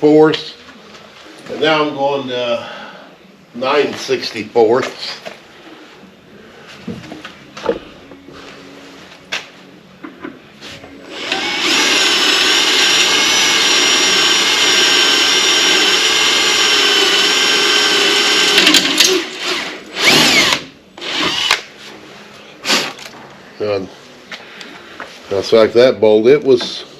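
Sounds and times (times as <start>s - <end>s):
electric drill whining: 11.1s - 21.7s.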